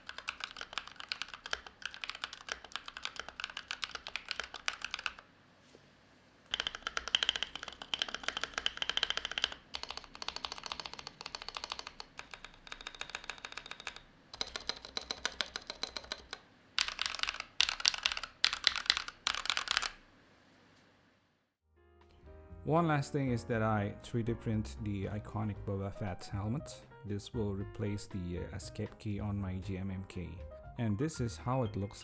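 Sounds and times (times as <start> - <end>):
mechanical keyboard key clacks: 0.0 - 5.2, 6.5 - 20.0.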